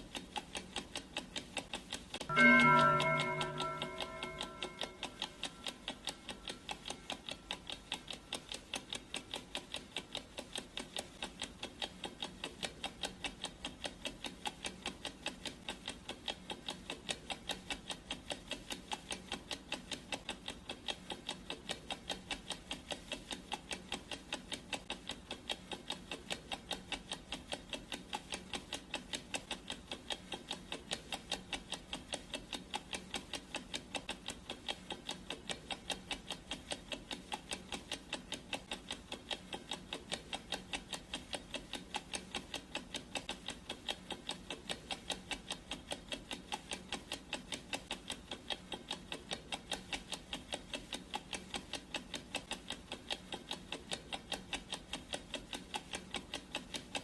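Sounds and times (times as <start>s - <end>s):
clock ticking: 0.0s - 57.0s
ringing tone: 2.3s - 5.7s.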